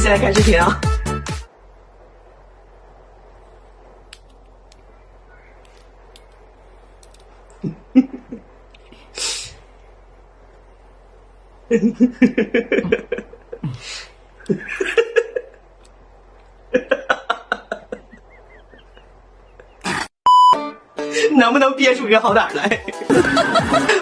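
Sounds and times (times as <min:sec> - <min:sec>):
person laughing in bursts: 0:07.6 - 0:08.5, 0:11.7 - 0:15.6, 0:16.7 - 0:20.1, 0:22.5 - 0:24.0
sharp breathy hiss: 0:08.9 - 0:09.9, 0:13.6 - 0:14.4.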